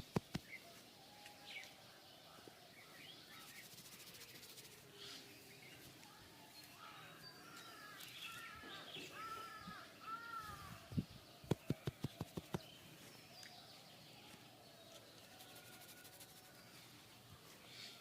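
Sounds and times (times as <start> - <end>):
sharp slap: 0.0 - 0.5
faint bird chirps: 0.0 - 17.0
hands tapping in massage: 11.5 - 12.6.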